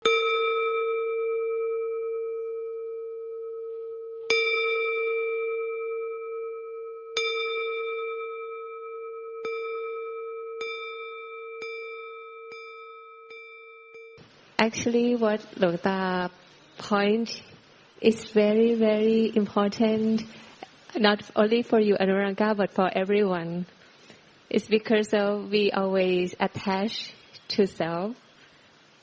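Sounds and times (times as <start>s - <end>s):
bowl bell ringing: 0.0s - 14.2s.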